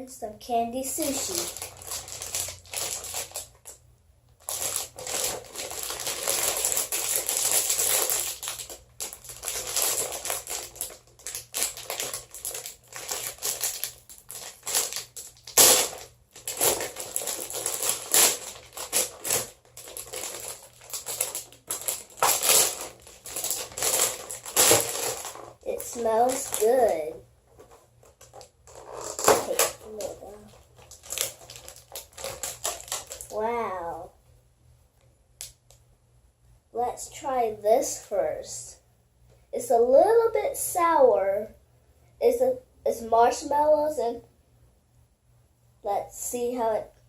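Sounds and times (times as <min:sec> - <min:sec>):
plastic packaging crinkling: 0:01.0 - 0:03.8, 0:04.4 - 0:33.7.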